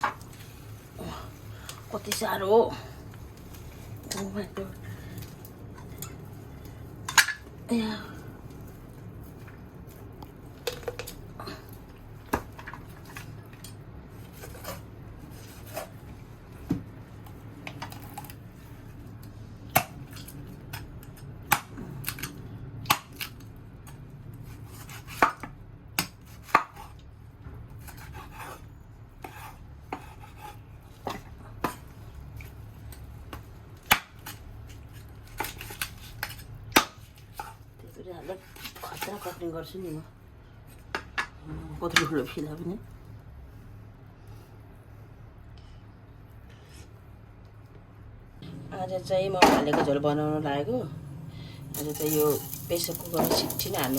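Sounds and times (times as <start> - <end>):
knife chopping meat and bone: 24.5 - 27.0, 27.8 - 31.8.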